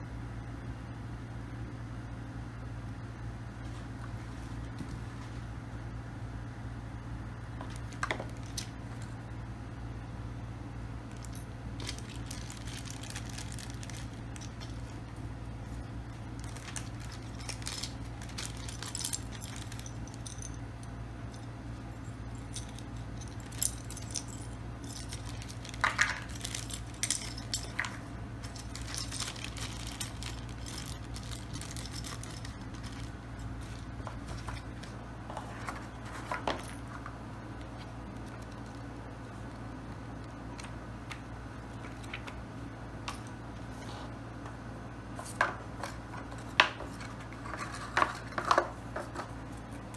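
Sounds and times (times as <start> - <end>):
low hum: 0.0 - 48.4
packaging rustling: 7.6 - 9.1, 11.1 - 20.6, 22.4 - 39.6
keyboard clicks and clinks: 16.4 - 21.5, 22.4 - 37.2.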